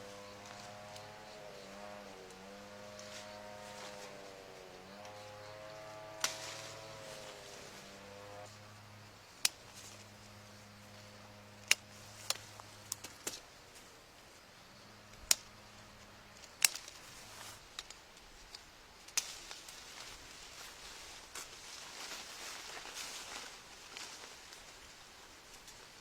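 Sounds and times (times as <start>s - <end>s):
sharp clicks: 15.1s - 15.5s.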